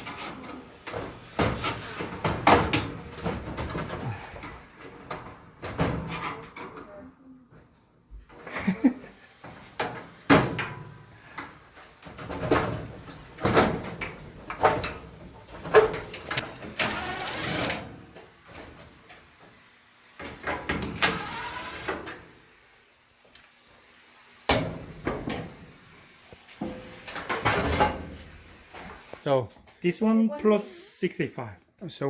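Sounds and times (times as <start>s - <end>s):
dryer parts knocking and clattering: 0.0s - 7.0s, 9.7s - 16.8s, 26.6s - 28.3s.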